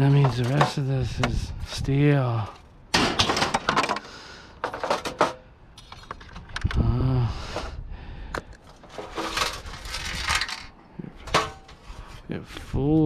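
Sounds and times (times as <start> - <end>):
metal parts clinking and scraping: 0.0 - 1.2, 2.5 - 6.8, 8.5 - 12.0.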